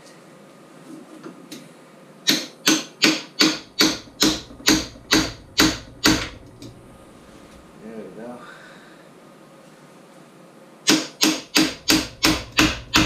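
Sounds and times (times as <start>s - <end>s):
rubber mallet blows on metal: 10.9s - 13.0s.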